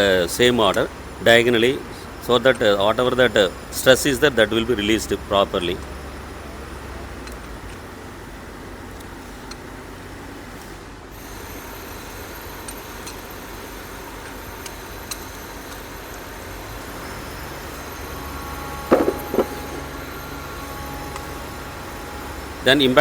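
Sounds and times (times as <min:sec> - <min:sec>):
hand tools clanking on metal: 0:00.0 - 0:07.9, 0:18.8 - 0:20.0
workshop background noise: 0:00.0 - 0:23.0.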